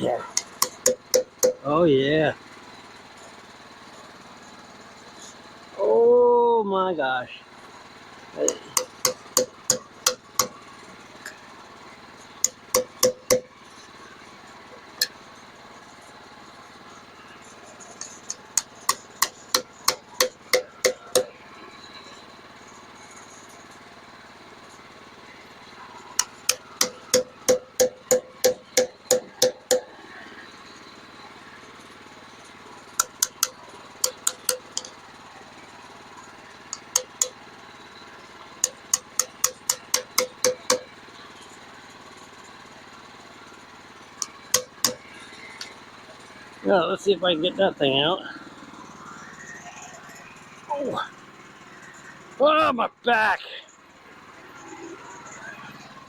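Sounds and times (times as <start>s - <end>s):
hammer blows on metal: 0.3s - 1.7s, 8.4s - 10.6s, 12.4s - 13.5s, 18.0s - 21.4s, 26.2s - 30.0s, 36.7s - 37.4s, 38.6s - 40.9s.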